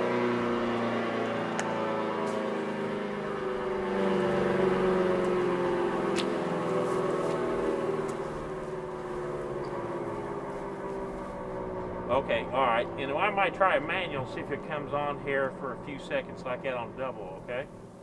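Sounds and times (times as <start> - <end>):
rotating warning siren winding down: 0.0 - 18.0.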